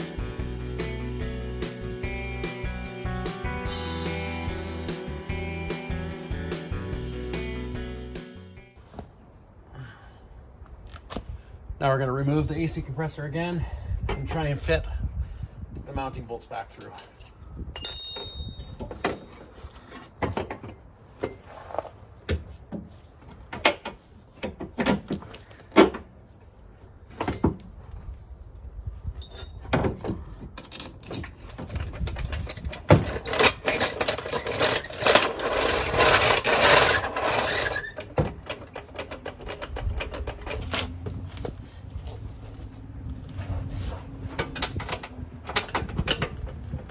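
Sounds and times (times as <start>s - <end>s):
metal parts rattling and scraping: 16.5s - 22.0s, 29.2s - 41.1s, 44.2s - 46.9s
hand tools clinking on metal: 16.6s - 19.4s, 29.2s - 40.7s.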